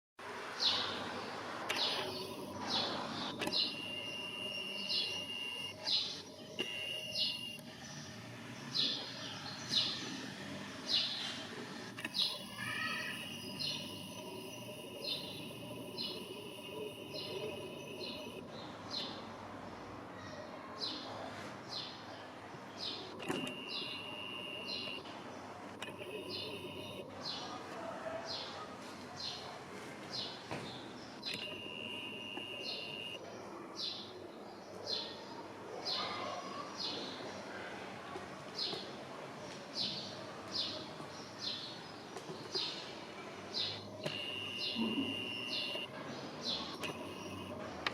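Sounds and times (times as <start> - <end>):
outdoor background noise: 0.2 - 47.9
bird chirping: 1.7 - 10.2, 12.0 - 19.2, 22.8 - 25.1, 25.8 - 27.5, 30.2 - 34.1, 43.5 - 47.6
click: 3.3 - 5.8, 11.9 - 18.4, 23.2 - 25.0, 25.8 - 27.0, 31.2 - 33.2, 44.0 - 45.9, 46.7 - 47.9
bird calling: 12.0 - 18.4.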